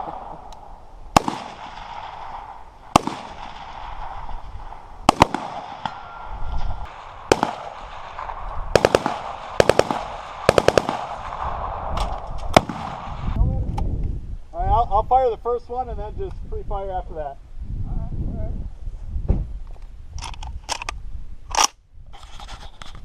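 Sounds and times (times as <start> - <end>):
rifle shots: 1.1 - 13.4
rifle bursts: 1.2 - 4.1, 5.0 - 6.2, 6.9 - 11.5.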